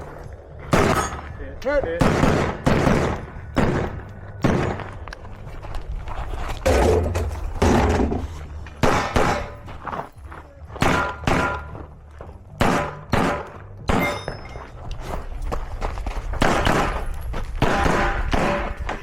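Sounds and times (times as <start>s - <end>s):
gunshots: 0.7s - 1.2s, 1.9s - 5.0s, 8.8s - 9.6s, 10.8s - 11.7s, 12.6s - 14.2s, 16.4s - 19.0s.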